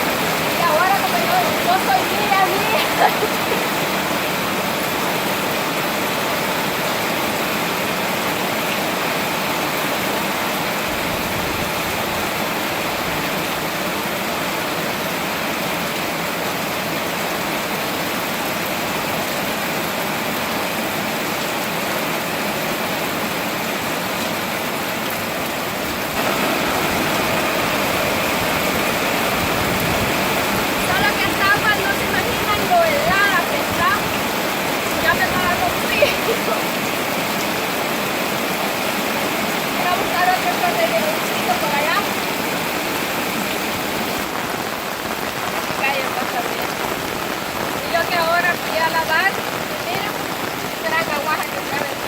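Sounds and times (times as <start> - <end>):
heavy rain pouring: 0.0 - 52.0.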